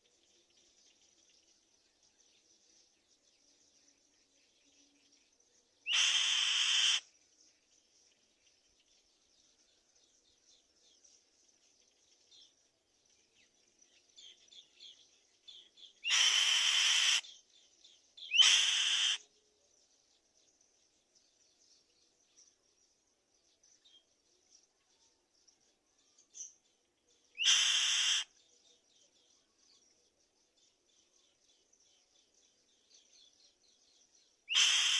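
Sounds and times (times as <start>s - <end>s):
faint high chirping: 0.0s - 34.9s
bird harsh screeching calls: 5.9s - 7.1s, 16.0s - 17.3s, 18.3s - 19.3s, 27.4s - 28.3s, 34.5s - 34.9s.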